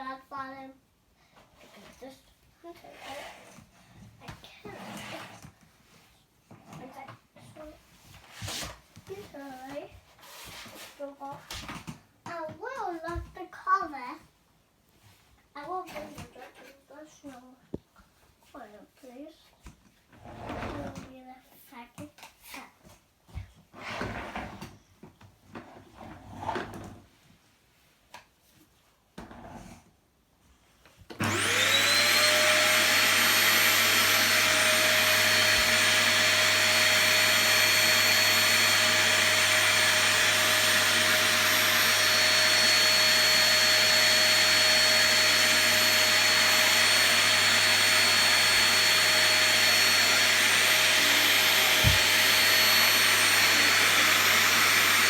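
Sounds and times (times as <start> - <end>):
vacuum cleaner motor whining: 31.1 - 55.0.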